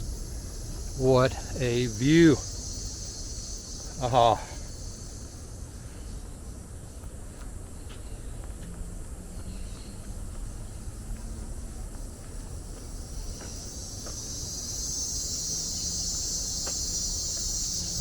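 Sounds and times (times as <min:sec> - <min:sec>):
insect buzzing: 0:00.0 - 0:06.1, 0:12.4 - 0:18.0.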